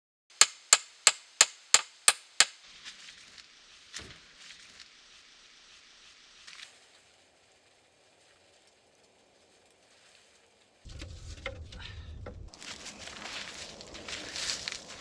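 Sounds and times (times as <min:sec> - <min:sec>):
hammer striking a nail: 0:00.4 - 0:02.6.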